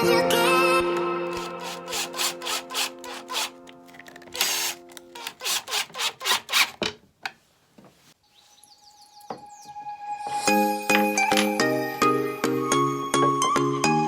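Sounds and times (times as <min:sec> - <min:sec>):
background music: 0:00.0 - 0:05.4, 0:09.4 - 0:14.0
scraping strokes on wood: 0:04.5 - 0:06.8.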